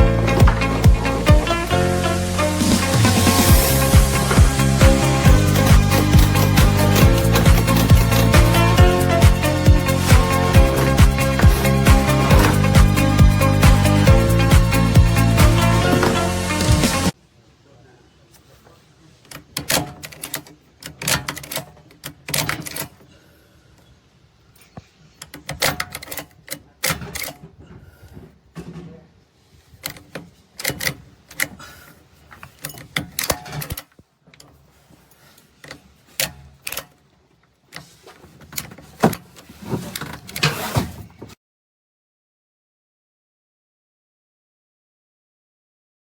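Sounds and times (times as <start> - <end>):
ratchet strap clicking: 3.6 - 13.8, 19.3 - 23.0, 29.8 - 31.6.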